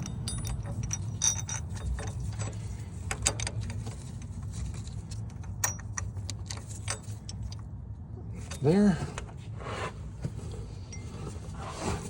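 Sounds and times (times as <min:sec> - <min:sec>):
metallic clinks and taps: 0:00.0 - 0:03.9, 0:05.3 - 0:07.6.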